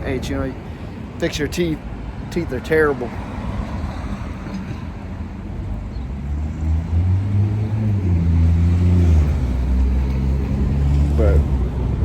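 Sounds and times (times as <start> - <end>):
road noise: 0.0 - 12.0
car engine humming: 2.6 - 12.0.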